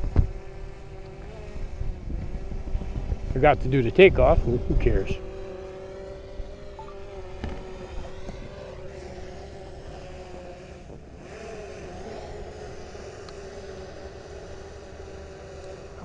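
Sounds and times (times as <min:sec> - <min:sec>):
wind rumble on microphone: 0:00.0 - 0:08.8
drone propellers humming: 0:00.0 - 0:16.0.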